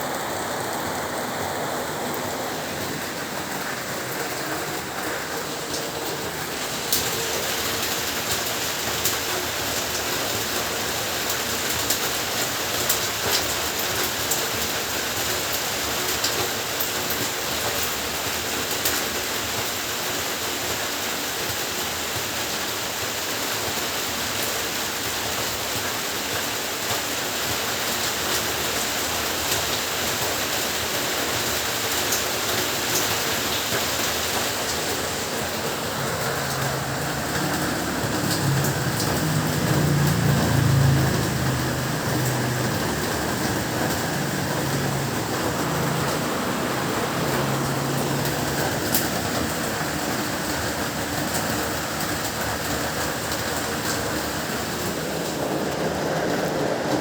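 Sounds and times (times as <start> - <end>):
heavy rain: 0.0 - 57.0
raindrop hits: 32.5 - 57.0.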